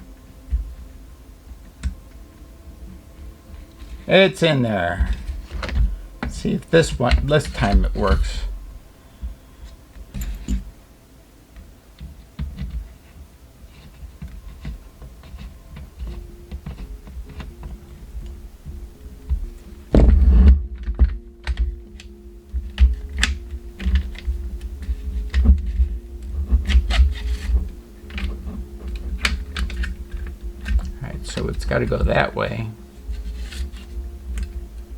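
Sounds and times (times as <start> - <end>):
faint steady hum: 0.0 - 34.9.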